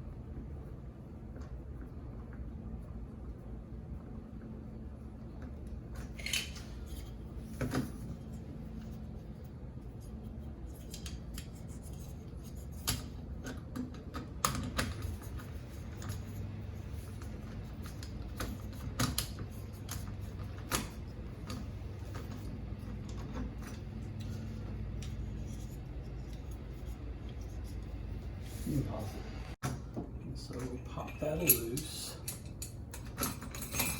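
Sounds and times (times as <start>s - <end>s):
steady low hum: 0.0s - 33.9s
metal latch parts clicking: 6.0s - 6.7s.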